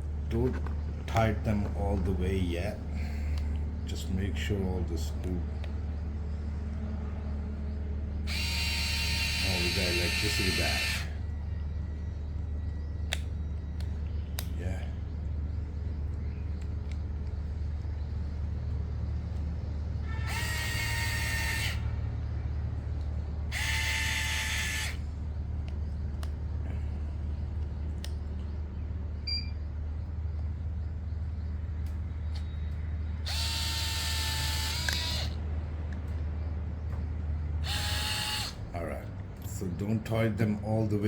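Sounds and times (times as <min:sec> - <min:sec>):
steady low hum: 0:00.0 - 0:41.0
electric screwdriver whirring: 0:08.3 - 0:11.2, 0:20.2 - 0:21.8, 0:23.5 - 0:25.0, 0:33.3 - 0:35.4, 0:37.6 - 0:38.6.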